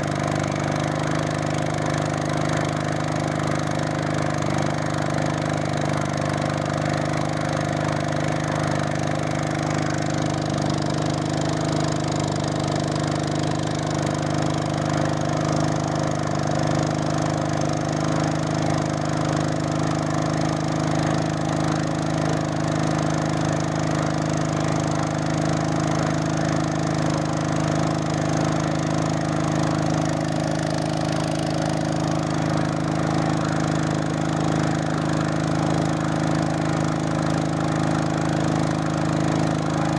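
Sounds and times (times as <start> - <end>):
engine running steadily: 0.0 - 39.9.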